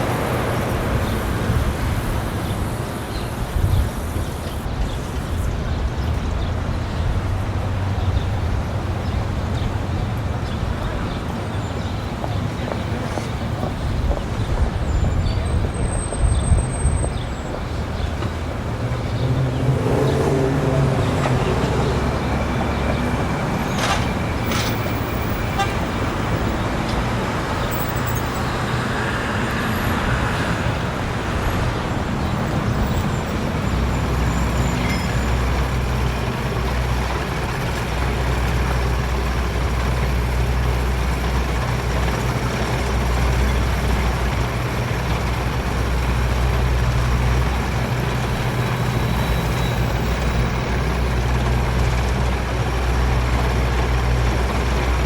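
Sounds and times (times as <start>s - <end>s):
motor vehicle engines rumbling: 0.0s - 55.0s.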